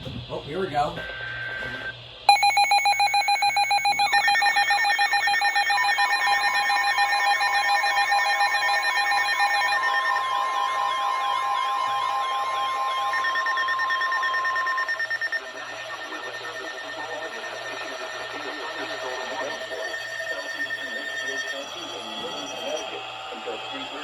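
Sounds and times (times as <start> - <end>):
warbling alert tone: 2.3 - 9.9
steady electronic tone: 2.3 - 22.8
rapid pulsing beeps: 2.3 - 24.0.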